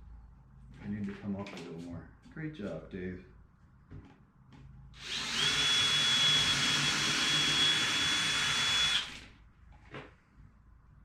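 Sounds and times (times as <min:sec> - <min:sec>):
power drill whining: 0:05.0 - 0:09.3.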